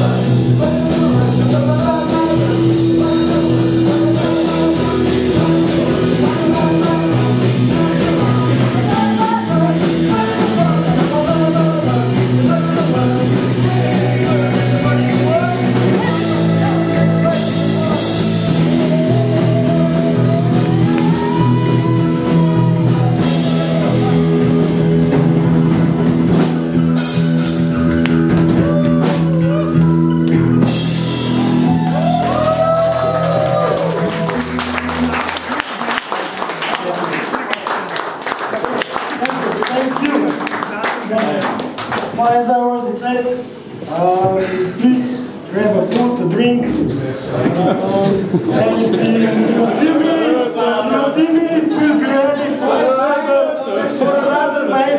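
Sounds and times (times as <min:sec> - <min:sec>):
person singing melody: 0:00.0 - 0:26.4
rock band playing: 0:00.0 - 0:37.4.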